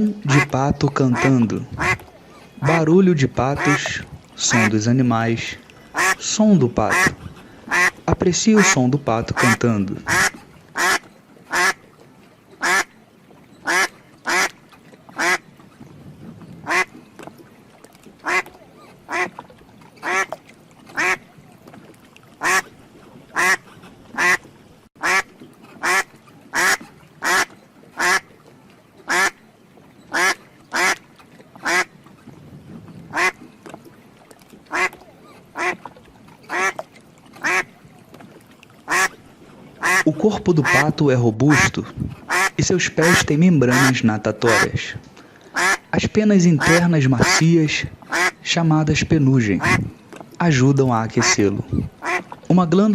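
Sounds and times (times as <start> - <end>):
duck quacking: 0.3 - 2.9, 3.5 - 4.7, 5.9 - 6.2, 6.8 - 8.0, 8.6 - 11.8, 12.6 - 12.9, 13.6 - 14.6, 15.2 - 15.4, 16.6 - 16.9, 18.2 - 18.5, 19.1 - 19.4, 20.0 - 20.4, 21.0 - 21.2, 22.4 - 22.7, 23.3 - 24.4, 25.0 - 28.3, 29.1 - 29.4, 30.1 - 31.0, 31.6 - 31.9, 33.1 - 33.4, 34.7 - 35.0, 35.6 - 35.8, 36.5 - 36.8, 37.4 - 37.7, 38.9 - 39.1, 39.8 - 40.9, 41.5 - 44.8, 45.5 - 45.8, 46.6 - 47.4, 48.1 - 48.4, 49.6 - 49.9, 51.2 - 51.4, 52.0 - 52.3.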